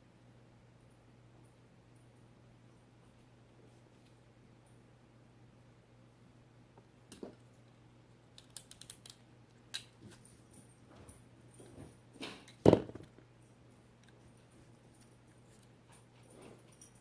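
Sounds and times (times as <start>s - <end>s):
faint steady hum: 0.0s - 17.0s
tape handling clicks and rustles: 8.3s - 10.3s.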